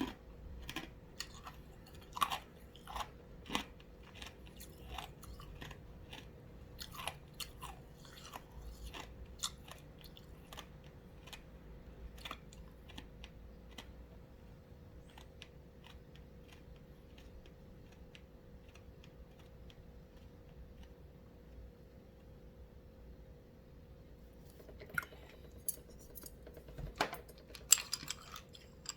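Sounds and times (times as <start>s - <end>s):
ice being chewed: 0.0s - 14.2s, 15.0s - 21.0s, 27.3s - 28.9s.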